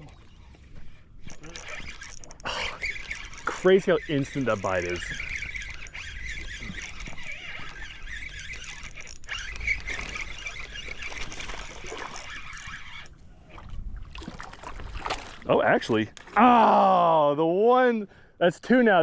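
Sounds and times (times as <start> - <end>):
gulls calling: 1.2 - 13.2.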